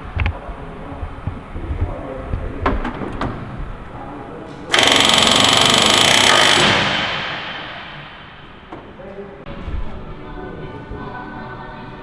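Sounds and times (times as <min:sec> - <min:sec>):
pneumatic air tool rattling: 0:04.7 - 0:09.0.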